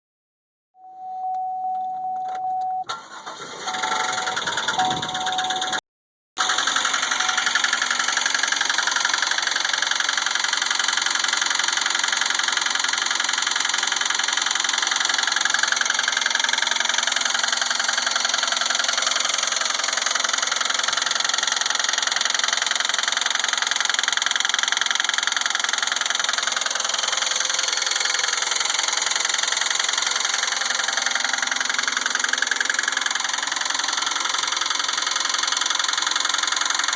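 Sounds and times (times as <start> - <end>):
car engine idling: 6.4 - 36.9
fast even engine knock: 6.4 - 36.9.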